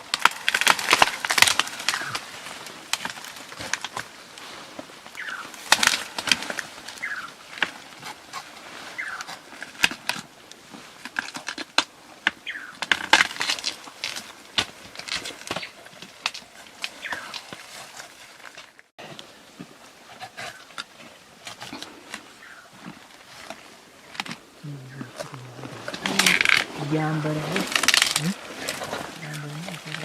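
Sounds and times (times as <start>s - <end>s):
vegetation cracking and snapping: 0.0s - 2.3s, 5.2s - 7.8s, 11.0s - 17.6s, 25.1s - 26.7s, 27.5s - 30.0s.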